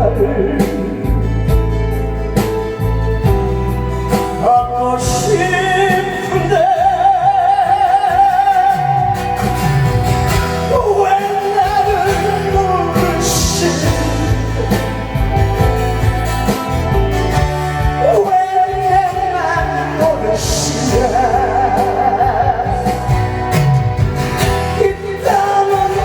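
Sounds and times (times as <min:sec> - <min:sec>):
person singing with vibrato: 0:00.0 - 0:02.1, 0:04.1 - 0:26.0
band accompaniment with steady beat: 0:00.0 - 0:26.0.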